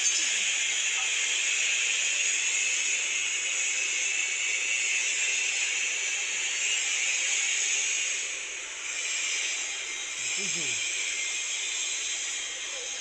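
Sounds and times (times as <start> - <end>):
welding arc hissing: 9.2 - 12.2.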